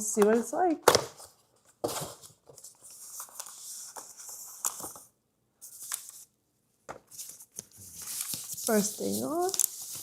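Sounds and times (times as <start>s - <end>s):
packaging rustling and tearing: 7.3s - 10.0s.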